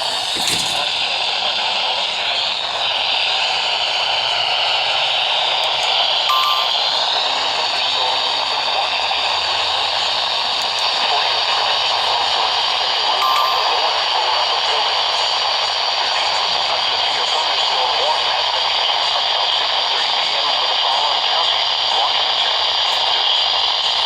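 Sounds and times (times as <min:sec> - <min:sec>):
radio static hiss: 0:00.0 - 0:04.2, 0:05.2 - 0:24.0
faint short tone: 0:06.3 - 0:06.9, 0:13.2 - 0:13.8.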